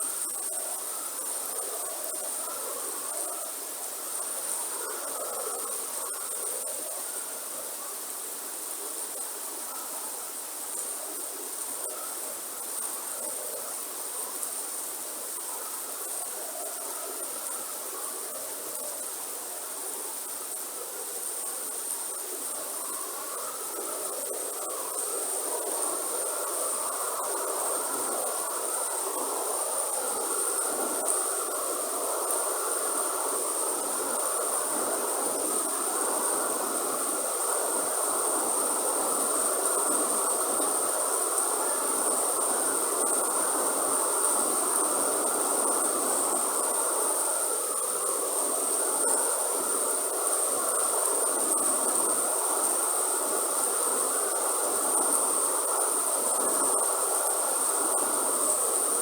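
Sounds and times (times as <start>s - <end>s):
high-pitched insect drone: 21.2s - 59.0s.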